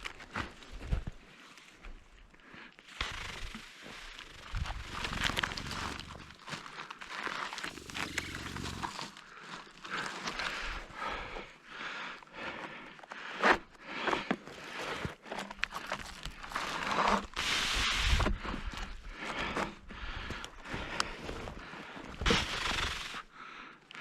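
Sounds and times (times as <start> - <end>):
footsteps crunching through brush: 4.0 - 10.5.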